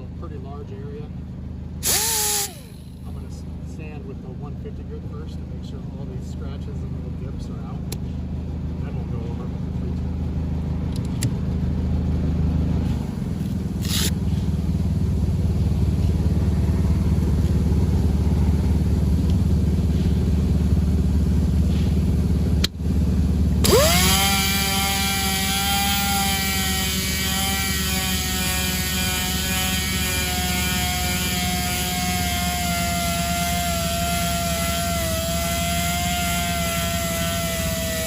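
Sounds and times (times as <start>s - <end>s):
steady low drone: 0.0s - 38.0s
power sander whining: 1.8s - 3.2s, 23.6s - 38.0s.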